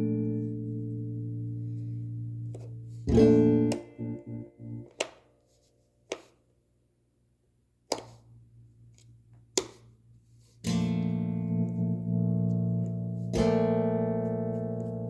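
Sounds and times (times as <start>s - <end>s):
guitar pick clicks: 2.5s - 5.2s.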